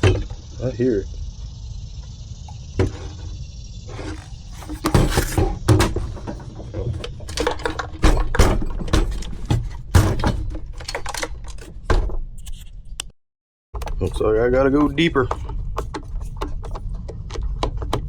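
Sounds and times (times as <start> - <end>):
loose part rattling in plastic housing: 4.0 - 11.9.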